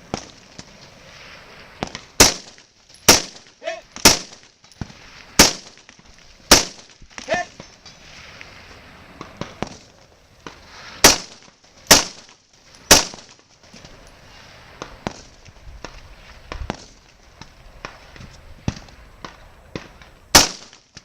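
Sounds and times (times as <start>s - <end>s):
loud rifle shots: 1.8s - 4.5s, 5.4s - 5.8s, 6.5s - 7.6s, 11.0s - 12.3s, 12.9s - 13.3s, 20.3s - 20.8s.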